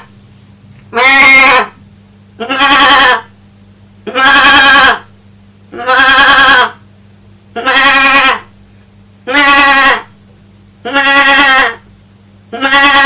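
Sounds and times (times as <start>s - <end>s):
man bleating like a goat: 0.9s - 1.8s, 2.4s - 3.3s, 4.1s - 5.1s, 5.8s - 6.8s, 7.6s - 8.5s, 9.3s - 10.1s, 10.8s - 11.8s, 12.5s - 13.0s.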